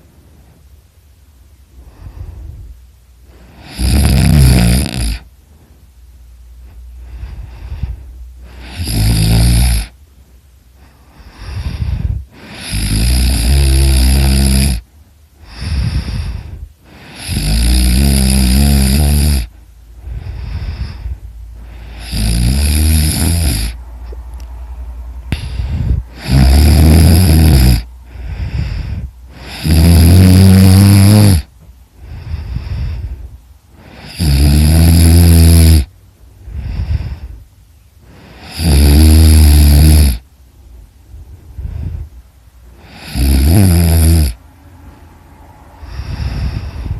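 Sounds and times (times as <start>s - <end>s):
quiet breathing: 0.0s - 46.9s
person snoring loudly: 3.4s - 5.3s, 7.1s - 10.0s, 11.2s - 23.8s, 25.3s - 33.2s, 33.8s - 35.9s, 38.1s - 40.2s, 42.8s - 44.4s, 45.8s - 46.9s.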